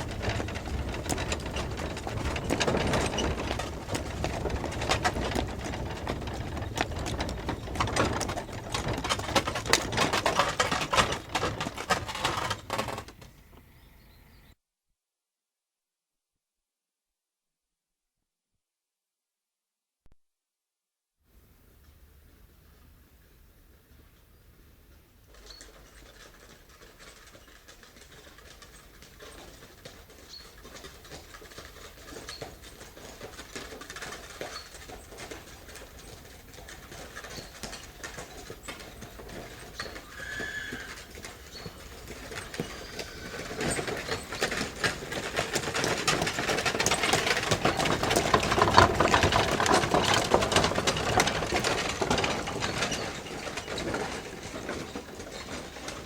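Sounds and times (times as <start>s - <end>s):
carriage wheels rattling: 0.0s - 13.4s, 25.3s - 56.0s
horse hooves clip-clopping: 0.0s - 14.5s, 21.8s - 56.0s.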